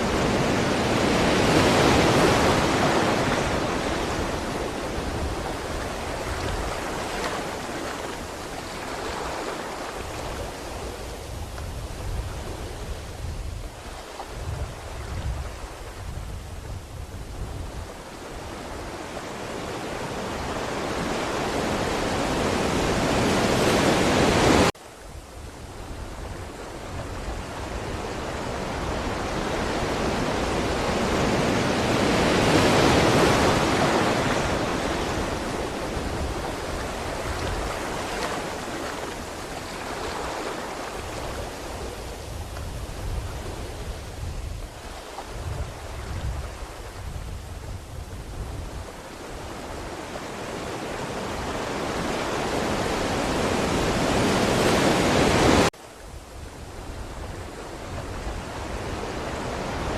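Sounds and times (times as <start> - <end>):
ocean waves washing on shore: 0.0 - 59.9.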